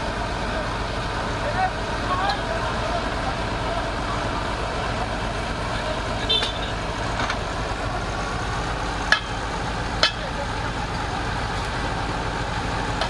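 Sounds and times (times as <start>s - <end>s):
diesel engine running: 0.0s - 13.0s
sharp metallic clanks: 9.1s - 9.4s, 10.0s - 10.3s.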